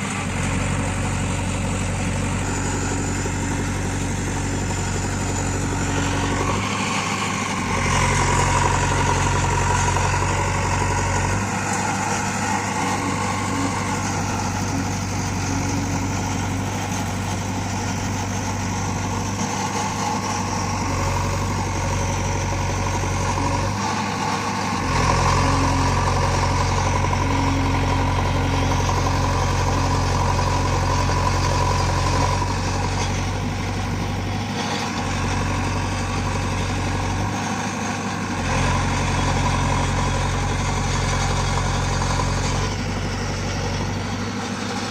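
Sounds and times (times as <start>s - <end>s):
diesel engine running: 0.0s - 44.9s.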